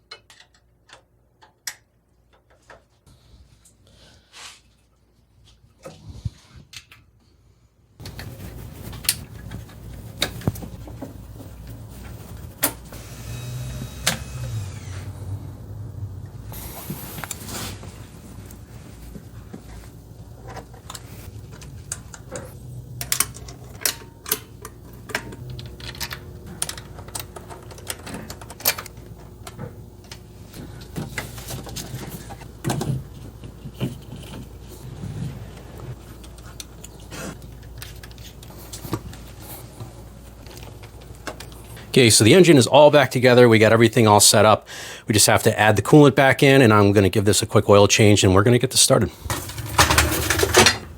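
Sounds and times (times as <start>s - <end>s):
metal tools clicking and clanking: 49.2s - 50.9s.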